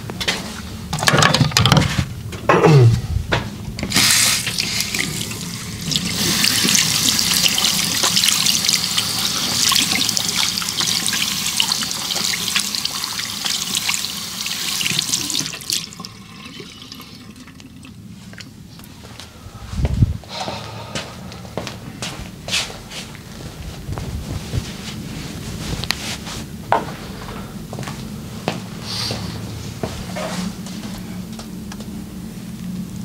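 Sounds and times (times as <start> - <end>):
running water splashing: 3.9 - 17.9.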